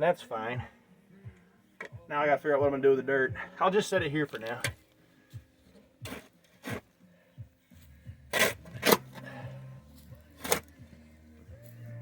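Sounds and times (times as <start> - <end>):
shovel scraping into dirt: 6.0 - 6.9, 8.3 - 9.3, 10.4 - 10.7.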